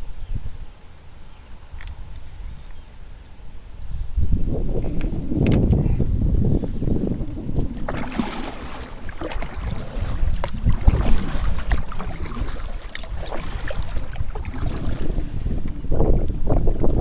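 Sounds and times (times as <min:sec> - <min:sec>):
wind buffeting microphone: 0:01.5 - 0:17.0
water splashing against kayak: 0:04.4 - 0:17.0
sharp water slaps: 0:07.2 - 0:15.8.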